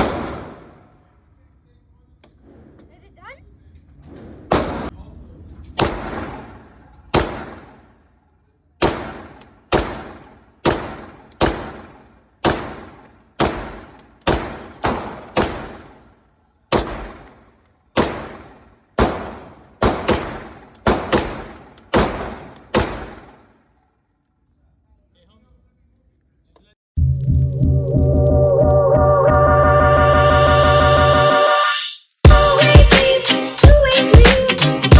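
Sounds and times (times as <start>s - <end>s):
pistol shots reverberating: 0.0s - 1.0s, 4.5s - 4.9s, 5.8s - 8.2s, 8.8s - 23.7s.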